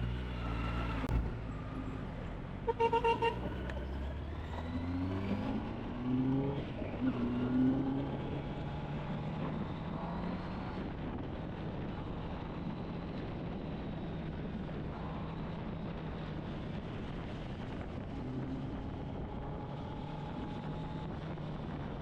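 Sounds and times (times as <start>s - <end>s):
motorcycle engine accelerating: 0.0s - 2.0s.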